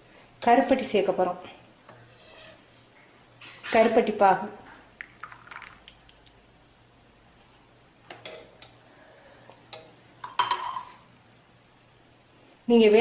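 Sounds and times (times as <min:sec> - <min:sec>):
metal spoon clinking against cup: 0:09.7 - 0:11.0.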